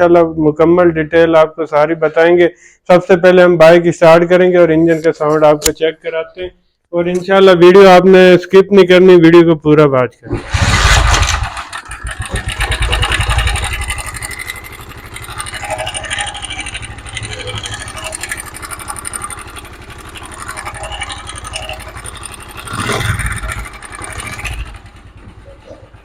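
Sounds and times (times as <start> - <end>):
motorcycle engine revving: 10.3 - 26.0.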